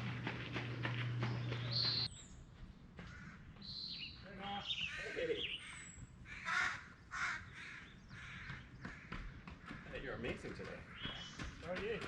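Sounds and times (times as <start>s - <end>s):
low hum: 0.0s - 2.9s
faint footfalls: 0.0s - 6.1s, 8.1s - 12.0s
birds chirping and whistling: 0.9s - 2.5s, 3.6s - 6.2s, 10.8s - 11.8s.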